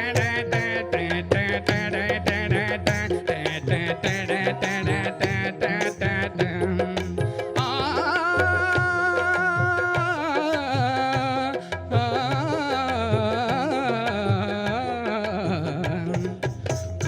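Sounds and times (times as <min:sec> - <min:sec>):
steady drum beat: 0:00.0 - 0:17.0.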